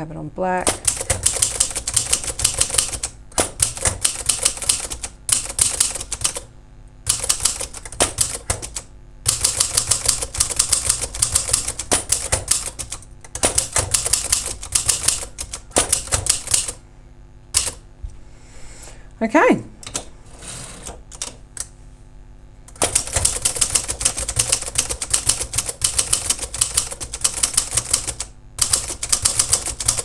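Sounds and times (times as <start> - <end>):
typewriter keystrokes: 0.6 - 6.5, 7.1 - 16.8, 17.5 - 17.8, 20.8 - 21.7, 22.7 - 30.0.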